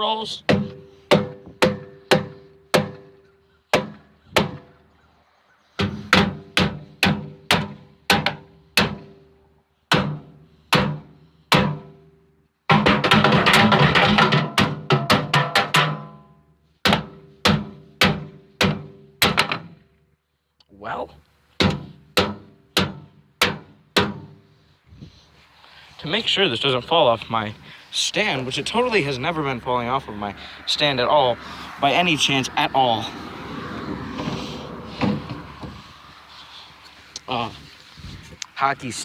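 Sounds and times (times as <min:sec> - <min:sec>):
drum hits and roll: 0:12.7 - 0:16.2.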